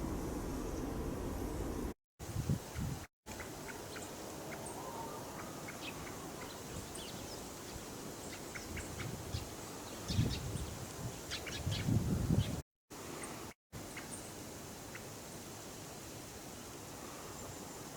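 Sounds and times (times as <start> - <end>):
low rumble: 0.0 - 2.0
steady outdoor hiss: 0.0 - 17.9.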